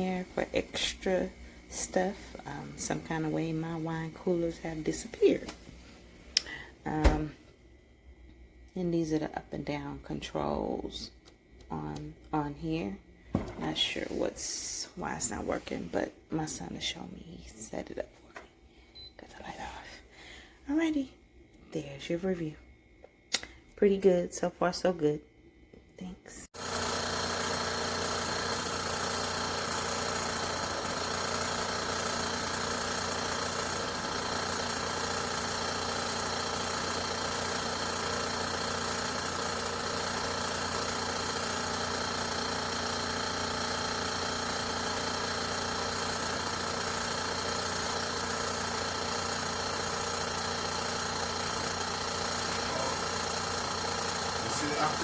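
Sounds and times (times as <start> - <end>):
wine fridge compressor humming: 0.0 - 16.9, 26.6 - 55.0.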